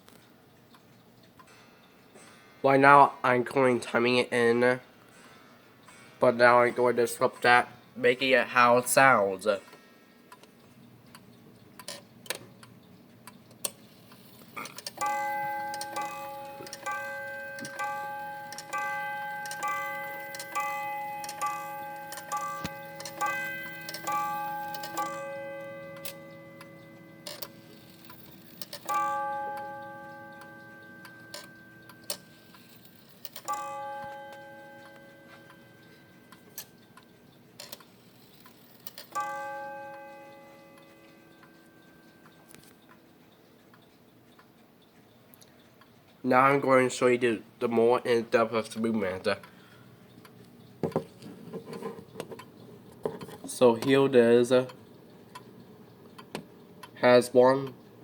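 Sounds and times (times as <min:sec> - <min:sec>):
clock ticking: 0:12.6 - 0:50.8
wall clock striking: 0:14.4 - 0:43.2.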